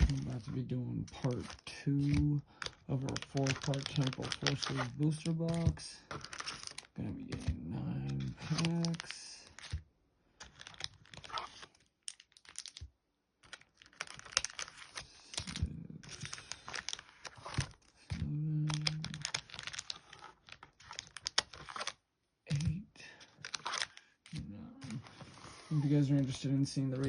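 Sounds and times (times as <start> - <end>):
packaging crinkling and tearing: 0.0 - 9.8, 10.4 - 22.0, 23.2 - 27.0.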